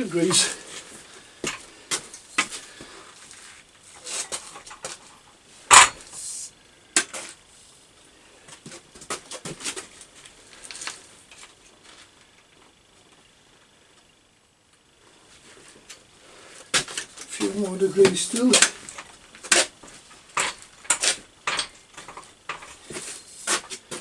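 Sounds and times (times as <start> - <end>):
loud metal clank: 5.7 - 6.0
metallic clinks and knocks: 18.1 - 23.2.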